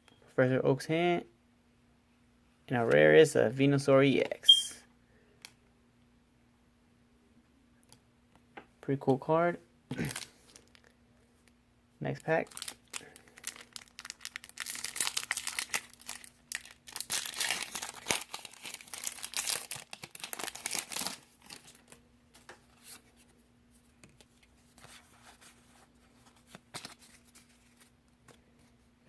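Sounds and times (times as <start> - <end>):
foil wrapper tearing and crinkling: 12.5 - 22.0.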